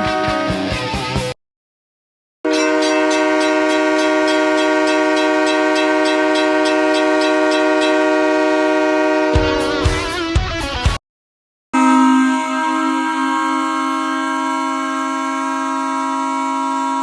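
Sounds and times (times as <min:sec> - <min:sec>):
air horn blast: 0:00.0 - 0:00.8, 0:02.4 - 0:10.0, 0:11.7 - 0:17.0
rock song: 0:00.0 - 0:01.3, 0:09.4 - 0:11.0.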